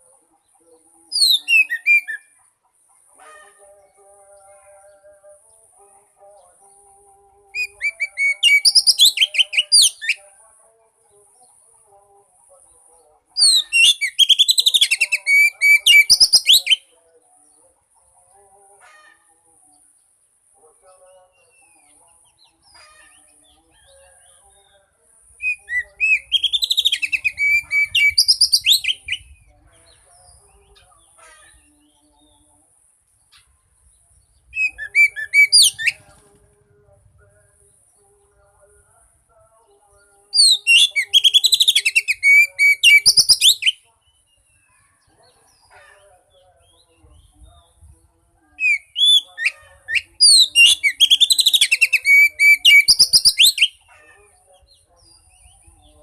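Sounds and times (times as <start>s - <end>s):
bird whistles and chirps: 1.2s - 2.3s, 7.6s - 10.2s, 13.4s - 16.8s, 25.4s - 29.3s, 34.6s - 36.0s, 40.4s - 43.8s, 48.6s - 53.8s.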